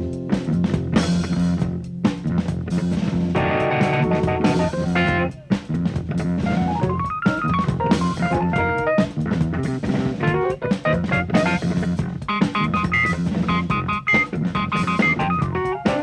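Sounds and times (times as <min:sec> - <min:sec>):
jazz fusion band playing: 0:00.0 - 0:16.0
rising run of notes: 0:03.4 - 0:05.4, 0:06.4 - 0:09.1.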